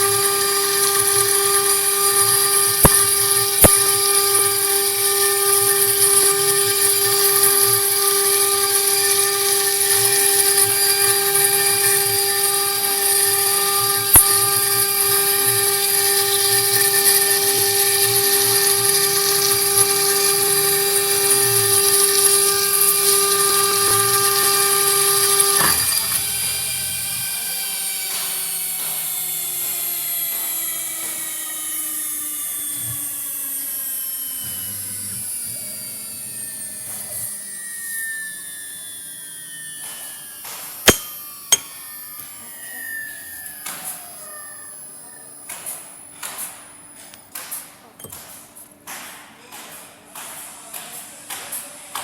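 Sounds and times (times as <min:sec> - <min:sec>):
router spindle whine: 0:00.0 - 0:47.3.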